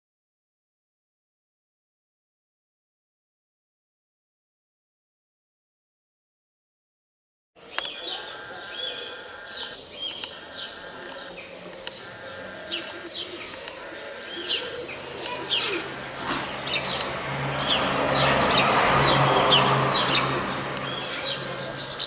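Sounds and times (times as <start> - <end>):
songbirds chirping: 7.6 - 22.0.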